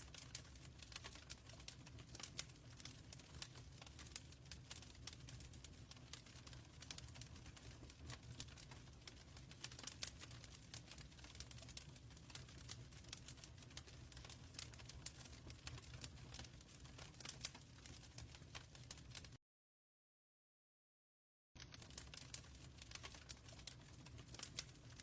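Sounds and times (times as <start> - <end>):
low rumble of fire: 0.0 - 19.4, 21.6 - 25.0
wood fire crackling: 0.0 - 19.4, 21.6 - 25.0.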